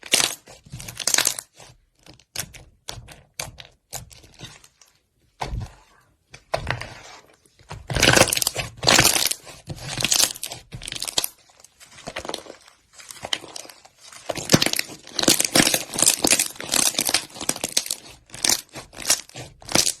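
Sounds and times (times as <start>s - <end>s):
slime squished by hand: 7.8s - 20.0s.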